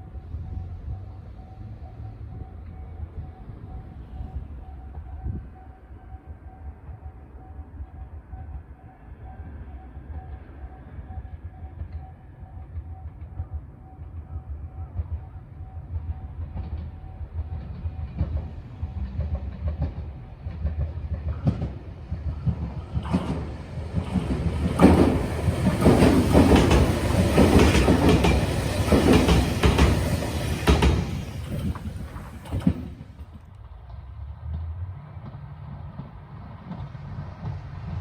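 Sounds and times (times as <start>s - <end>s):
electric train passing: 0.0s - 38.0s
train wheels clacking on rail joints: 16.4s - 38.0s.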